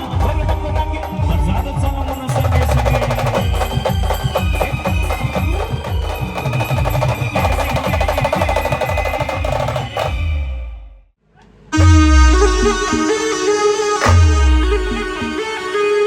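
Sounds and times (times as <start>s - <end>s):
band playing dance tune: 0.0s - 10.2s, 11.8s - 16.0s
driving drum rhythm: 0.0s - 10.4s, 14.0s - 15.4s.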